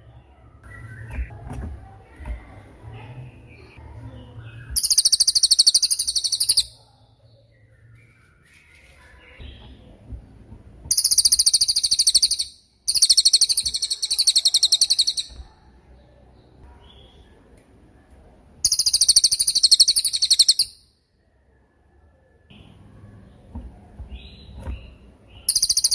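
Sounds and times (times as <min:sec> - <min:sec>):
bird singing high trills: 0:04.5 - 0:06.8, 0:10.9 - 0:15.4, 0:18.6 - 0:20.8, 0:25.4 - 0:25.9.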